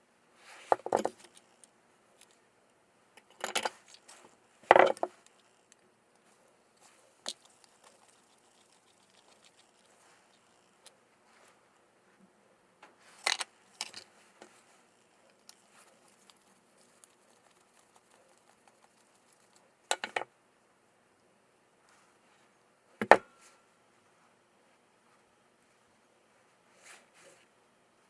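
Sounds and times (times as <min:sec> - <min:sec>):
clicks and knocks of tools handled: 0:13.2 - 0:14.1.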